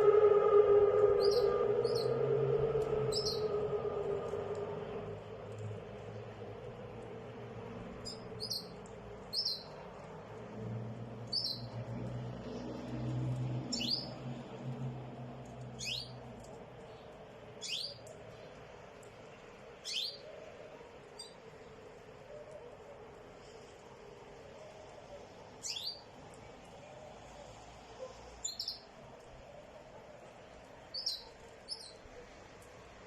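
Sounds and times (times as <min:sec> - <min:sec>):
bird chirping: 0:01.2 - 0:03.7, 0:08.0 - 0:08.7, 0:09.3 - 0:09.7, 0:11.3 - 0:11.8, 0:13.7 - 0:14.1, 0:25.6 - 0:26.0, 0:28.4 - 0:28.8, 0:30.9 - 0:32.0.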